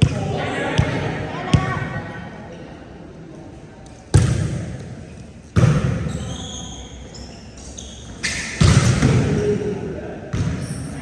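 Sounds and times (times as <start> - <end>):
volleyball being hit: 5.6 - 6.0
short high squeaks: 6.1 - 8.5.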